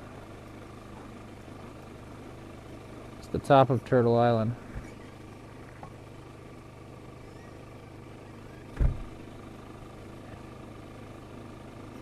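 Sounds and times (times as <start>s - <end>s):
engine idling: 0.0s - 12.0s
dull thump: 8.8s - 9.2s.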